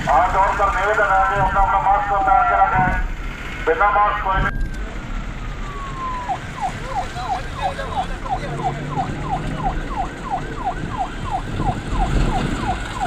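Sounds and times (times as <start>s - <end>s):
police siren yelping: 3.7s - 13.0s.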